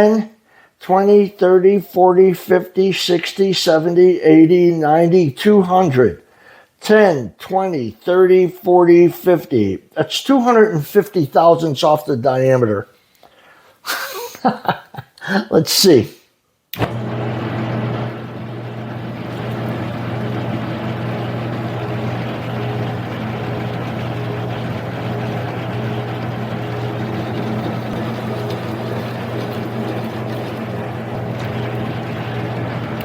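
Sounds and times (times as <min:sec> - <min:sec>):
lathe motor humming: 0:16.8 - 0:33.0
lathe pulley slipping: 0:16.8 - 0:33.0.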